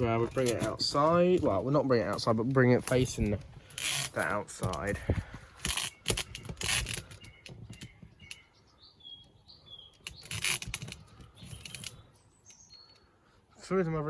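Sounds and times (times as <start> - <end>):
high bird chirps: 5.7 - 13.4.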